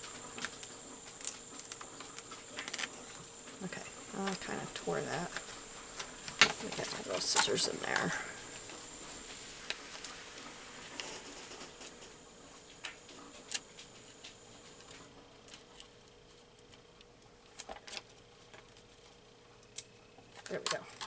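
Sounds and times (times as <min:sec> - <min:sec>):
scissors snipping paper: 0:00.0 - 0:08.8.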